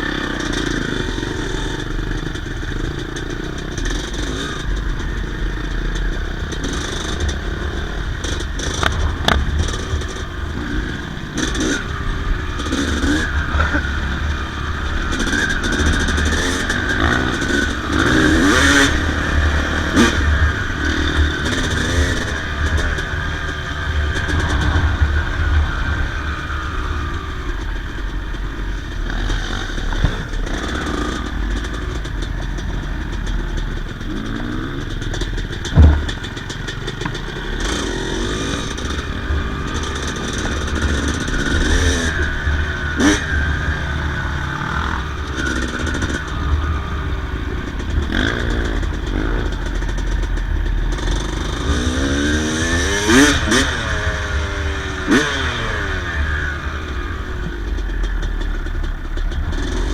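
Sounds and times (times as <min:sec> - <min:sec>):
dirt bike engine revving: 0:00.0 - 0:59.9
sharp knocks: 0:35.6 - 0:37.2.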